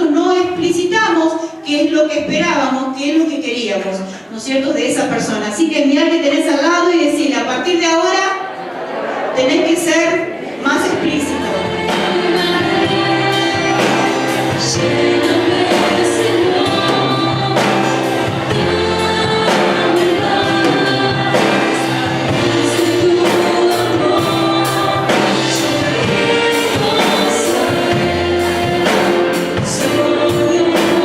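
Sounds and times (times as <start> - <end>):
group singing worship music: 8.2 - 31.0
band playing: 10.3 - 31.0
steady drum beat: 10.9 - 31.0.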